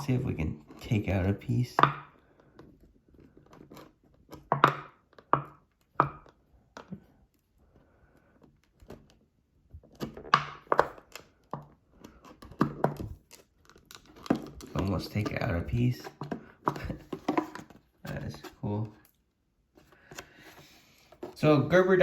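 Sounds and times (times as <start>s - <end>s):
hard plastic clicking and cracking: 8.4s - 19.2s.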